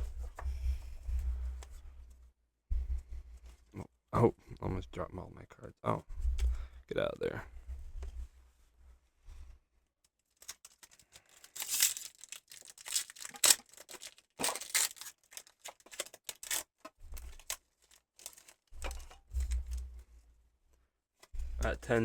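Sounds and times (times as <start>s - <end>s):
wrapper tearing and crinkling: 10.3s - 19.8s.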